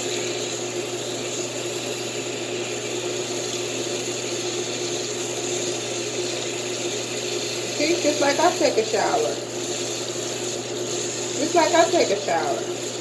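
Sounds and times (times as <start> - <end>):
shower water running: 0.0 - 13.0.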